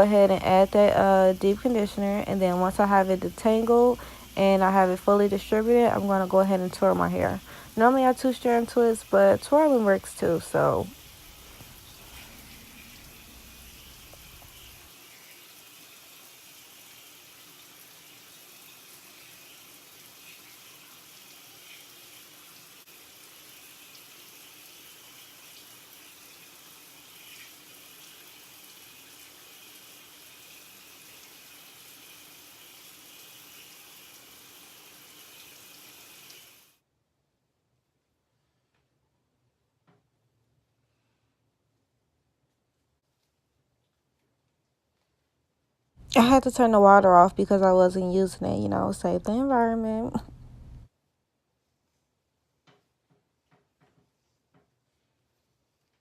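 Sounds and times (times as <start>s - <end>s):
water running from a tap: 0.0s - 36.8s.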